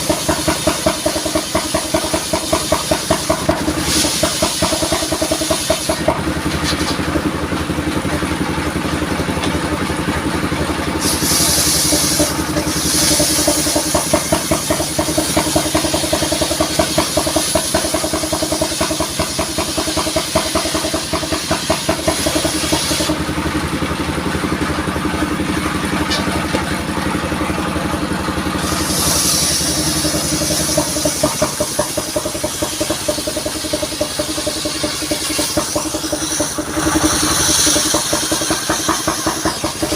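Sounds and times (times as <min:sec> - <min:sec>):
sawmill engine running: 0:00.0 - 0:39.9.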